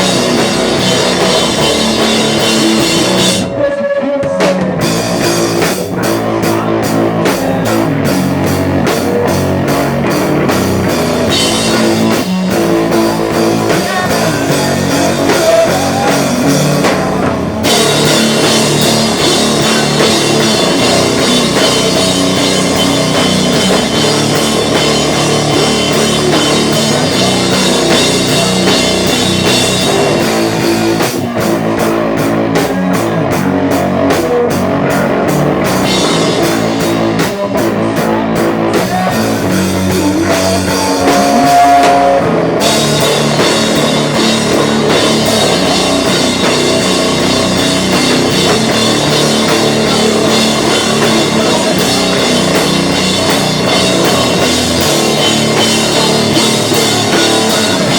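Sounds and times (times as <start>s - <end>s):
drum kit fast beat: 0.0s - 57.9s
live rock band playing: 0.0s - 57.9s.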